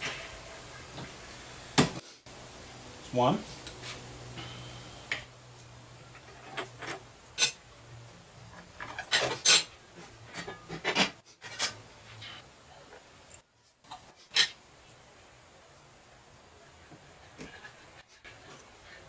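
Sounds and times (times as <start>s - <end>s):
sheet steel scrapes and knocks: 8.8s - 11.8s.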